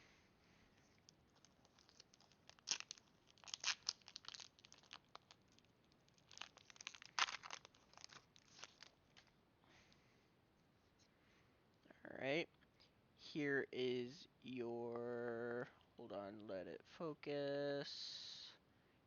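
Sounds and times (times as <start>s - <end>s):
foil wrapper tearing and crinkling: 1.4s - 9.3s.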